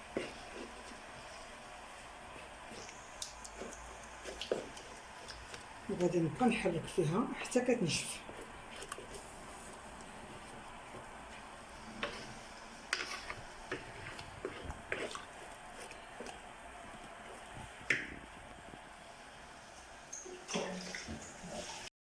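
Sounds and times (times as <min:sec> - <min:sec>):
spoon stirring thick filling: 0:00.0 - 0:18.4
spoon scraping against pot: 0:12.9 - 0:16.0.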